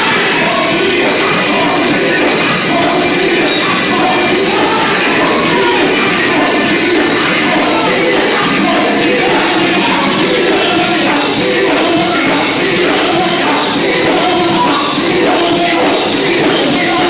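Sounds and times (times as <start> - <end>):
band playing: 0.0 - 17.0
gospel group singing: 0.0 - 17.0.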